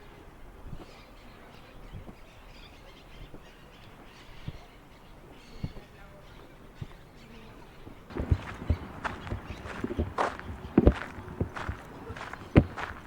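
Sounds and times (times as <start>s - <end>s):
soft handling knocks and clicks: 8.1s - 13.0s.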